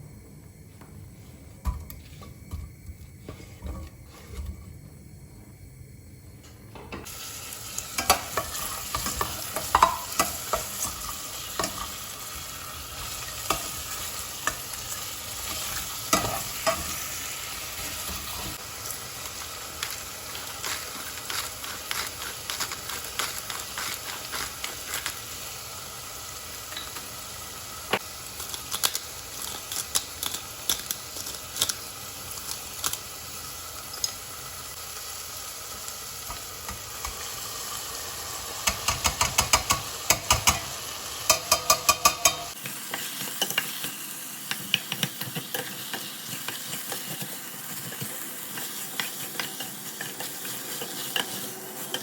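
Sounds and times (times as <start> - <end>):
faint sizzle: 0.0 - 52.0
utensil scraping in a pan: 19.8 - 25.4
utensil clicking against pan: 38.6 - 40.7, 41.3 - 43.7.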